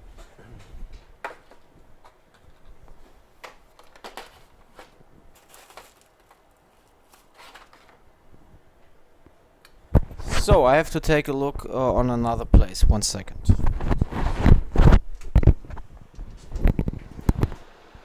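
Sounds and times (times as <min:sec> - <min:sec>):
packets rustling and clicking: 0:01.3 - 0:08.1.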